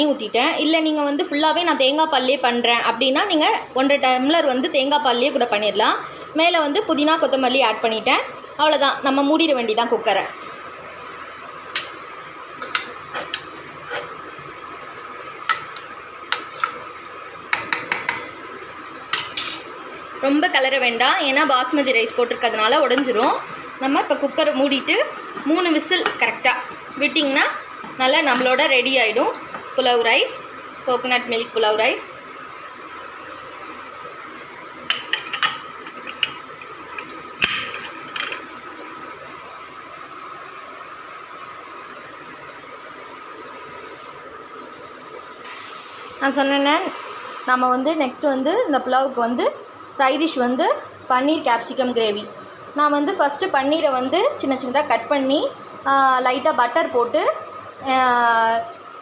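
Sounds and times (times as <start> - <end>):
faint high hum: 0.0 - 59.0
ladle scraping metal pot: 12.6 - 14.2
ringing taps on pot: 17.6 - 18.3.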